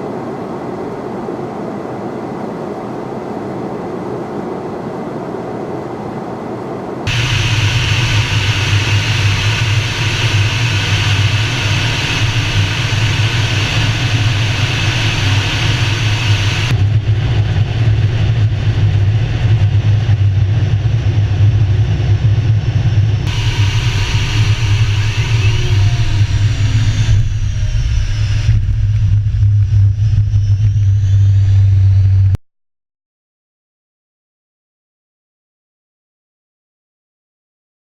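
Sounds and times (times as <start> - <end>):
loud jet engine noise: 0.0 - 32.4
jet passing pitch sweeps: 7.1 - 19.4, 23.1 - 32.4.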